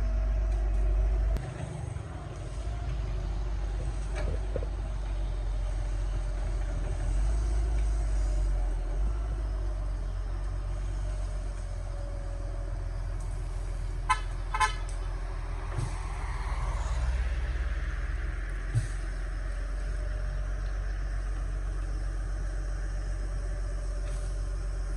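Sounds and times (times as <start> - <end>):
excavator diesel engine rumbling: 0.0 - 24.9
horn toots: 14.0 - 15.0.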